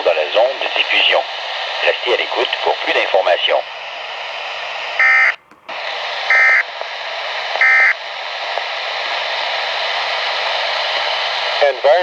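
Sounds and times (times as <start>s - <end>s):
radio static hiss: 3.4s - 12.0s.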